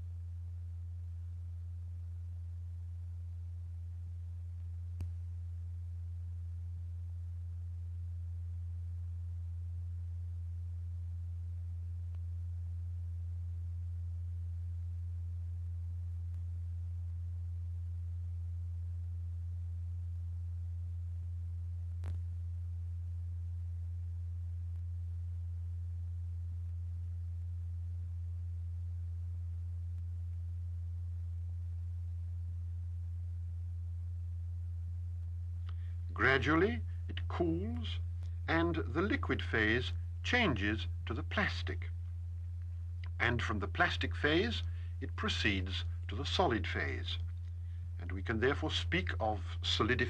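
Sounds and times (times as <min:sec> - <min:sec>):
low steady sine tone: 0:00.0 - 0:50.0.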